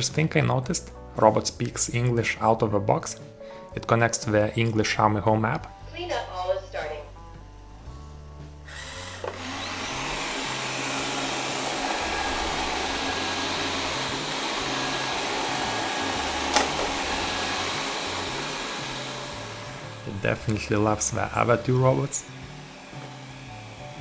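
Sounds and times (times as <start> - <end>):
robot vacuum suction whirring: 8.6 - 24.0
sharp click: 16.5 - 16.8.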